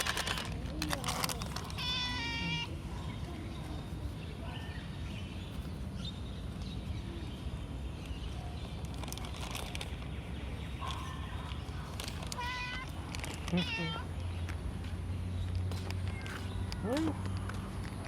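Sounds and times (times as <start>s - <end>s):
cat meowing: 1.8s - 2.7s, 12.3s - 14.1s.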